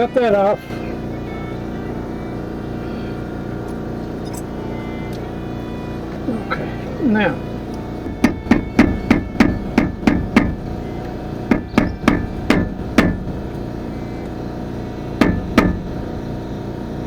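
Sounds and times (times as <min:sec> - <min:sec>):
hammer blows on metal: 0:08.0 - 0:16.5.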